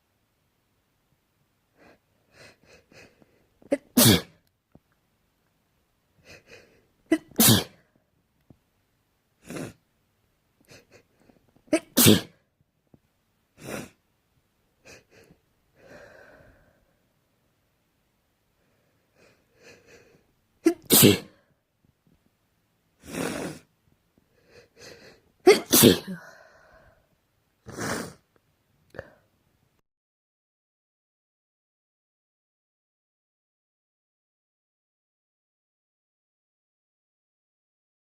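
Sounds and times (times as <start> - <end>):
person sneezing: 3.0 - 4.4, 6.3 - 7.8, 9.4 - 9.8, 11.7 - 12.4, 13.6 - 14.0, 20.6 - 21.4, 23.0 - 23.7, 24.8 - 26.4, 27.6 - 28.3.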